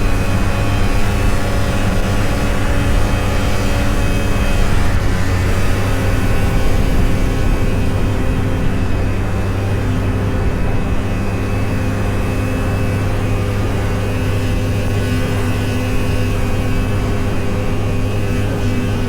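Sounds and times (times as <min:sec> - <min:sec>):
snowmobile engine running: 0:00.0 - 0:19.0.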